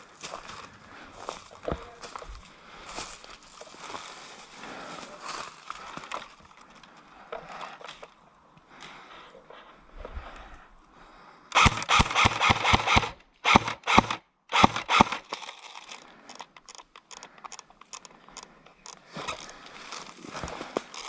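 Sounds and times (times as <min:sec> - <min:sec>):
airsoft guns firing: 0:11.6 - 0:15.3.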